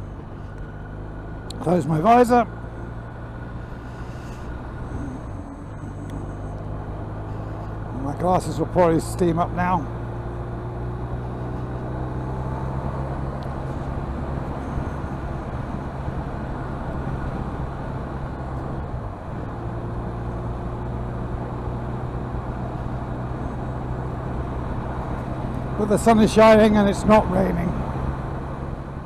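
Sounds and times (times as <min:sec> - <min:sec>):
motorcycle engine running: 0:00.0 - 0:29.0.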